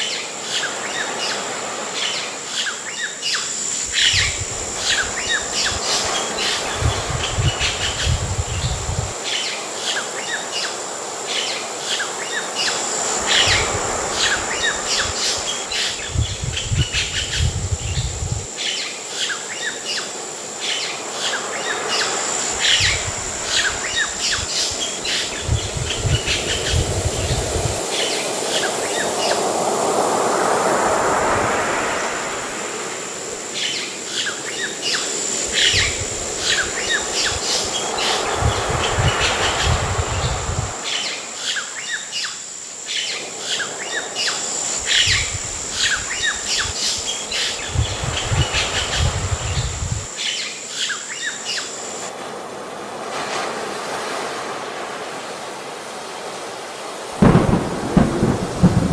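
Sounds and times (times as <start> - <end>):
wave of surf: 0.0 - 58.9
birds chirping: 2.6 - 9.1, 21.5 - 29.4, 43.6 - 52.0.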